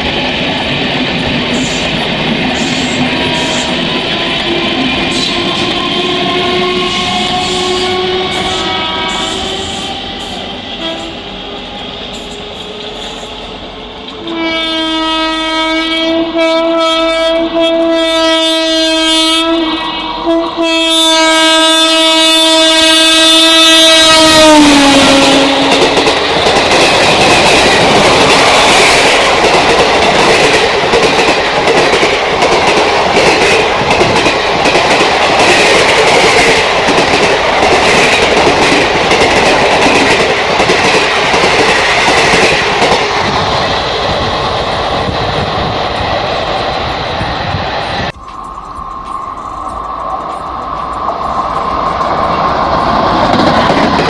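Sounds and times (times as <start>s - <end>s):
locomotive horn blasts: 4.6s - 11.2s, 14.2s - 25.8s.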